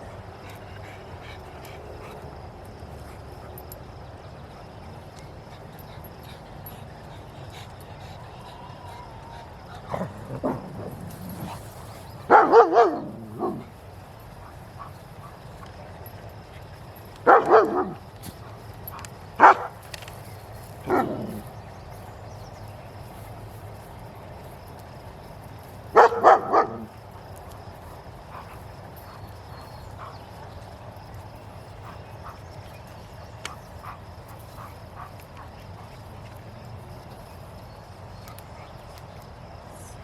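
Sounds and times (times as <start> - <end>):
dog barking: 12.3 - 13.7, 17.2 - 18.0, 19.4 - 19.7, 20.8 - 21.4, 25.9 - 26.9.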